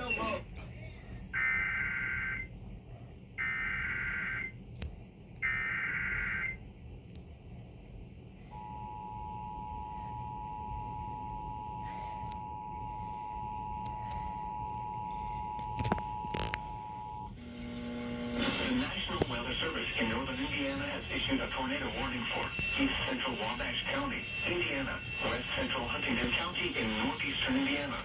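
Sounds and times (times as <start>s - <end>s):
digital data bursts: 18.4s - 28.0s.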